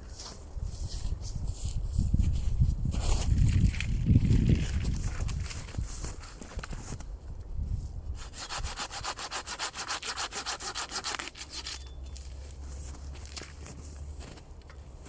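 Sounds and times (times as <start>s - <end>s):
hand saw cutting through a pole: 8.2s - 11.8s.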